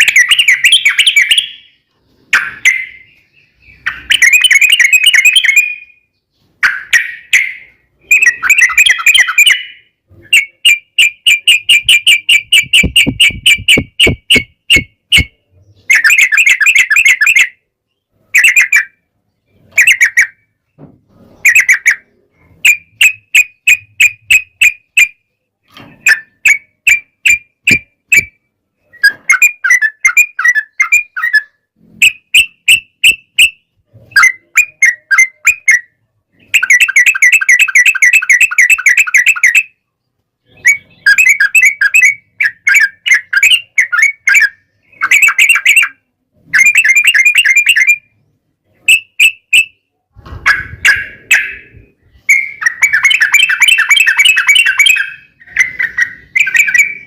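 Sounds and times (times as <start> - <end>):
bulbuls chattering calls: 50.4 - 57.0.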